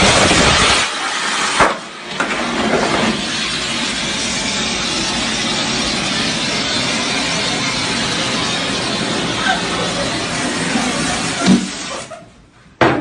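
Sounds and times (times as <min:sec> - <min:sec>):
firework cracks: 0:00.0 - 0:02.2
firework hissing: 0:00.0 - 0:12.2.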